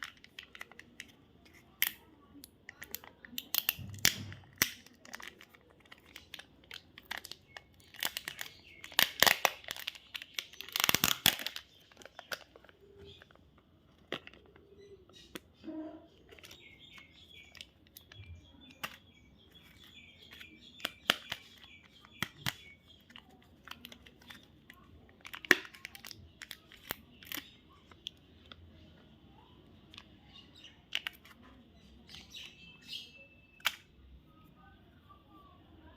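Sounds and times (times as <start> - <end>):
candy wrappers crackling and tearing: 0.0 - 32.9
small bird chirping: 7.1 - 13.4, 14.4 - 25.1, 25.8 - 35.9.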